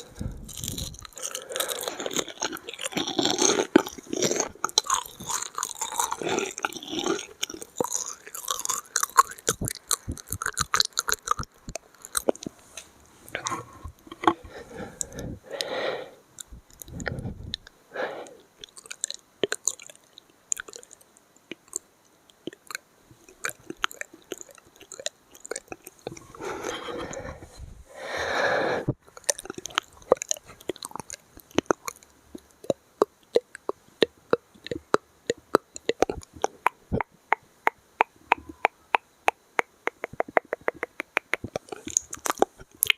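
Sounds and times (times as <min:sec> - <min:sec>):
breathy whispers: 0:00.0 - 0:05.0, 0:12.1 - 0:18.5, 0:26.0 - 0:31.7
chewing-like crunches: 0:00.0 - 0:12.6, 0:18.6 - 0:27.4, 0:29.1 - 0:37.4, 0:38.0 - 0:42.9
wet mouth clicks and smacks: 0:00.0 - 0:12.6, 0:18.6 - 0:26.8, 0:29.1 - 0:42.9.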